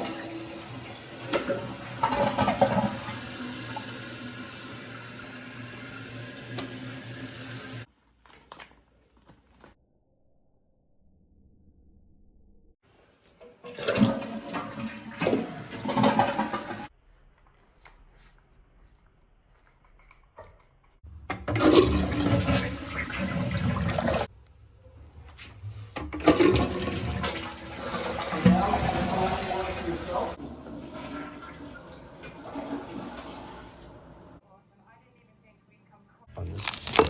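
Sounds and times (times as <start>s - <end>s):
toilet flushing: 0.0s - 7.9s, 13.4s - 16.9s, 21.3s - 24.3s, 25.4s - 34.4s.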